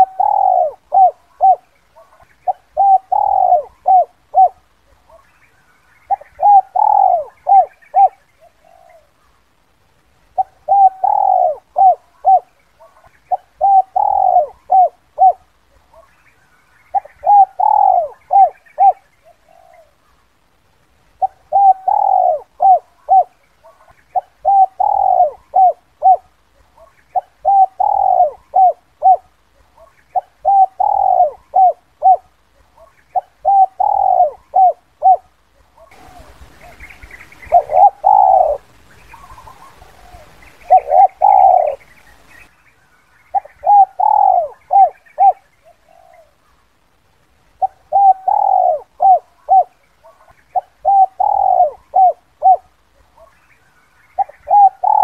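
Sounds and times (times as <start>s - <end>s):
dove cooing: 0.0s - 9.2s, 10.3s - 16.2s, 16.9s - 20.2s, 21.2s - 42.4s, 43.3s - 46.6s, 47.6s - 53.5s, 54.1s - 55.0s
faint hiss: 0.0s - 55.0s.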